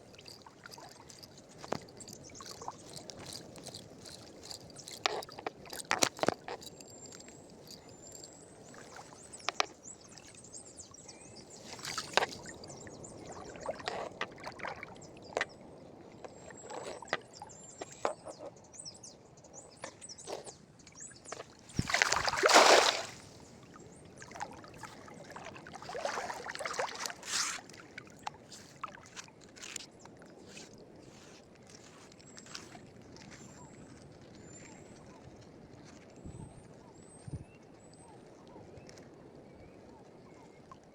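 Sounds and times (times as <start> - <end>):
water sloshing and splashing: 0.0 - 10.6, 11.4 - 15.6, 21.3 - 34.1.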